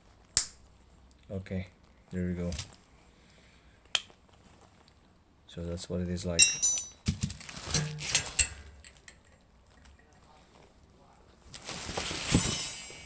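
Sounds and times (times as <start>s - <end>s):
scraping rustle: 7.1s - 8.6s, 11.5s - 13.0s.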